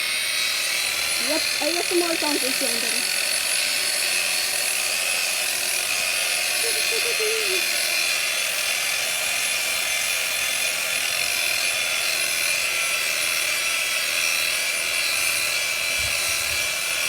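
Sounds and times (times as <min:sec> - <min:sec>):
power sander grinding concrete: 0:00.0 - 0:06.2, 0:09.2 - 0:17.0.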